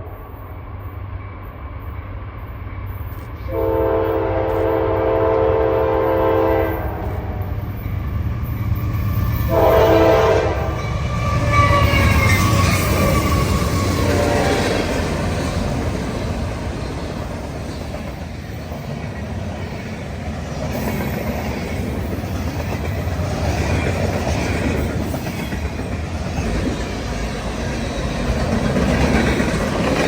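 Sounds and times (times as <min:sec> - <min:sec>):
freight train rumbling over rail joints: 0:00.0 - 0:30.0
train horn: 0:03.4 - 0:07.6, 0:09.4 - 0:15.1.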